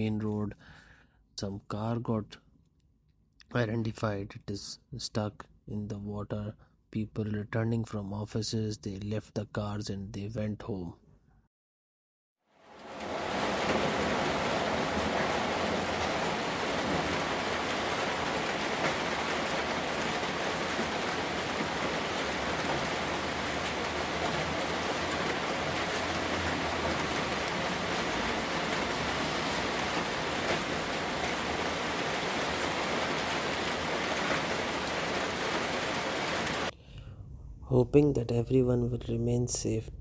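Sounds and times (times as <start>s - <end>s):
heavy rain on hard surfaces: 12.5s - 36.7s
louder raindrops: 12.6s - 38.9s.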